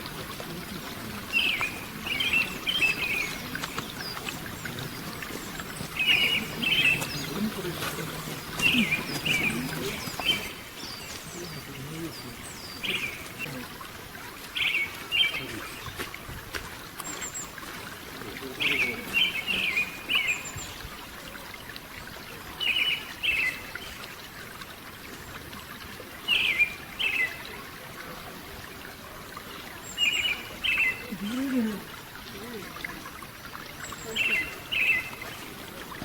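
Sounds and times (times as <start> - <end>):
background hiss: 0.0 - 15.8
songbird chirping: 0.0 - 16.1, 17.0 - 21.8, 29.0 - 36.0.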